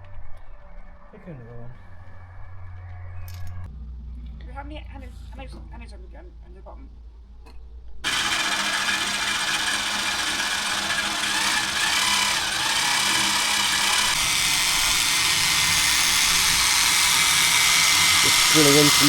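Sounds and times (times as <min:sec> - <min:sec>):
electric drill drilling: 0:08.0 - 0:19.0.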